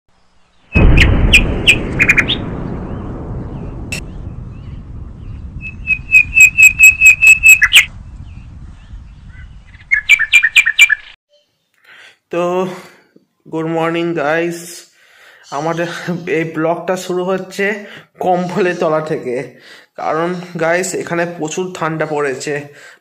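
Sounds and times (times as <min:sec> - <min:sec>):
bird chirping: 0:00.1 - 0:11.9
deep rumble: 0:00.8 - 0:09.9.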